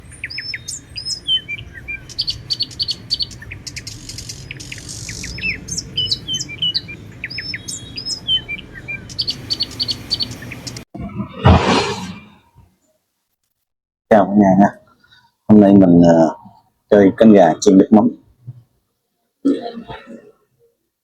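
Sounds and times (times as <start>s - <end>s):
birds chirping and whistling: 0.0s - 10.8s.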